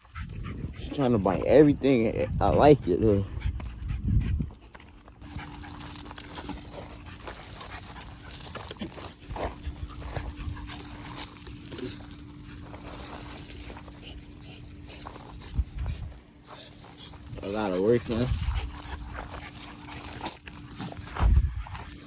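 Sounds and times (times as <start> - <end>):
dog panting: 0.0 - 22.0
faint steady hum: 3.3 - 22.0.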